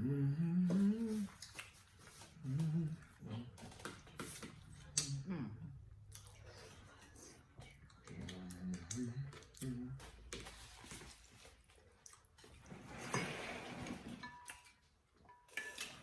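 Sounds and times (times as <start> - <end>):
person humming mm: 0.0 - 1.4, 2.4 - 3.4, 5.0 - 5.8.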